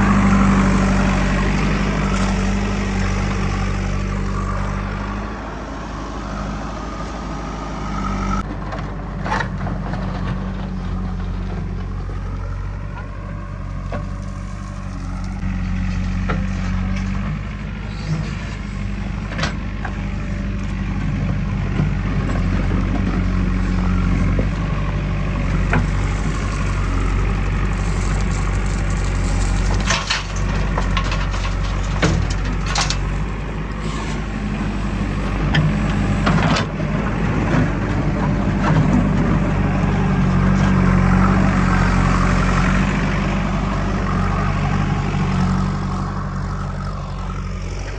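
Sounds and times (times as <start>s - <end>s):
diesel machinery engine running: 0.0s - 47.9s
sharp knocks and clanks: 29.1s - 34.2s.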